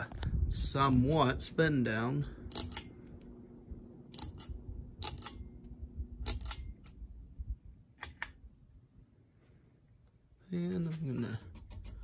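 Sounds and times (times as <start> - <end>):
ceiling fan motor hum: 0.0 - 12.0.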